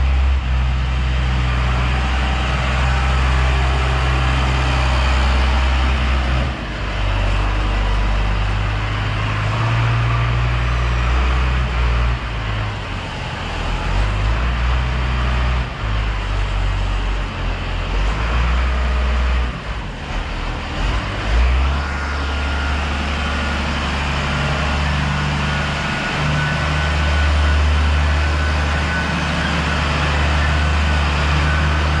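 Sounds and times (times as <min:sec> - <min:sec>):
heavy farm machinery engine: 0:00.0 - 0:32.0.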